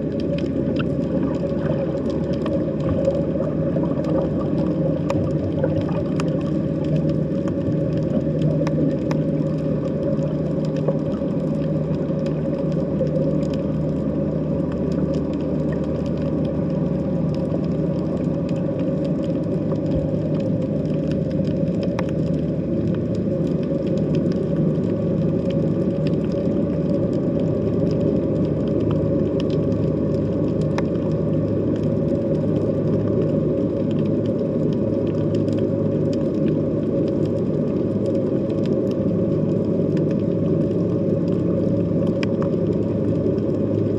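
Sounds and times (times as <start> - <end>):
underwater low drone: 0.0 - 43.9.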